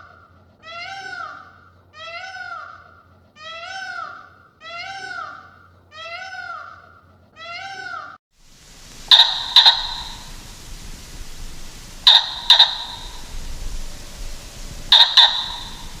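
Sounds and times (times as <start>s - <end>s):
sharp animal calls: 0.7s - 16.0s
noisy background: 8.6s - 16.0s.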